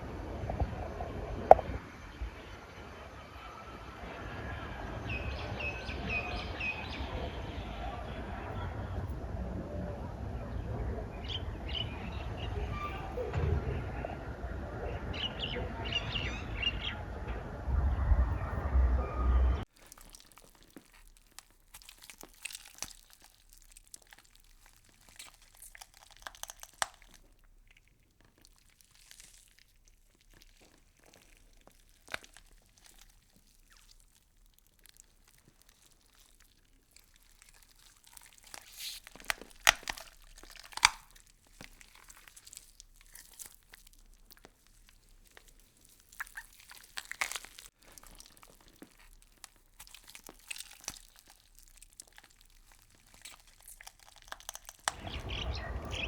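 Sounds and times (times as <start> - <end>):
insects chewing leaves: 19.7 - 56.0.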